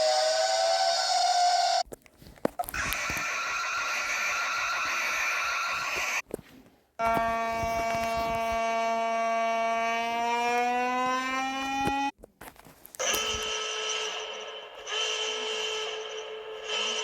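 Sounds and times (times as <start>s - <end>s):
harsh noisy alarm: 0.0s - 1.8s, 2.8s - 6.2s, 7.0s - 12.1s, 13.0s - 17.0s
electronic alarm buzzer: 7.0s - 12.1s, 13.0s - 17.0s.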